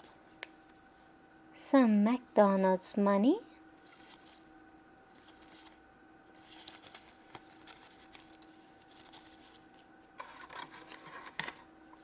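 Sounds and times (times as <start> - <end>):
faint steady hum: 0.0 - 12.0
paper money rustling: 3.8 - 4.4, 5.1 - 5.8, 6.4 - 11.6.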